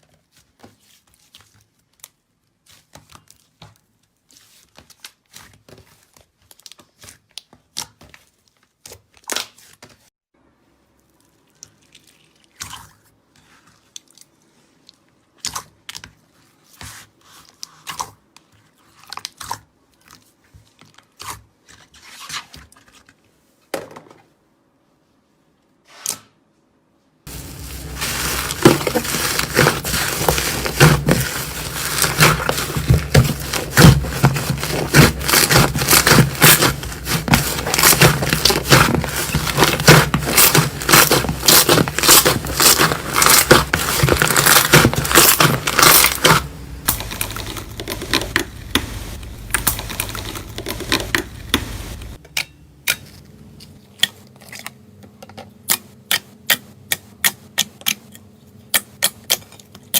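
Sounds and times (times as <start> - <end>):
slime crackling and popping: 27.3 - 52.2.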